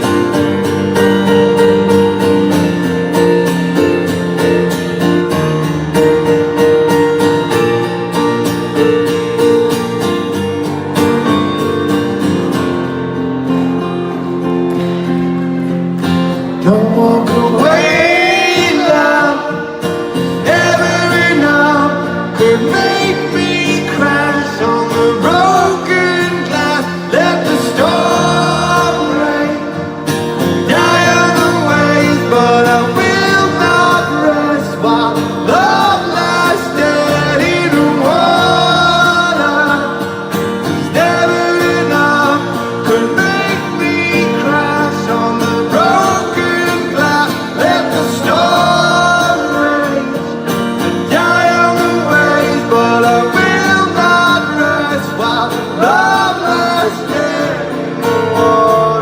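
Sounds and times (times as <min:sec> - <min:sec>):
live band playing guitar-led song: 0:00.0 - 0:59.0
wordless sung vocal: 0:16.6 - 0:59.0.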